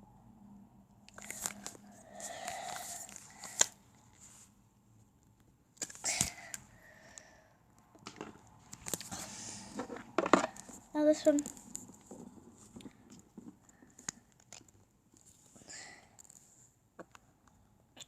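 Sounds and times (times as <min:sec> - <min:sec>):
plastic rustling: 0:01.2 - 0:04.4
plastic bottles and lids clicking: 0:08.0 - 0:10.8.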